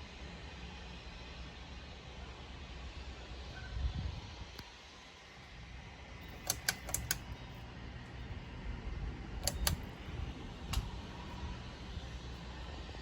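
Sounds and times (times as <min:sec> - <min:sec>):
ceiling fan rumble: 0:00.0 - 0:13.0
sharp light clicks: 0:06.3 - 0:07.4, 0:09.4 - 0:11.1.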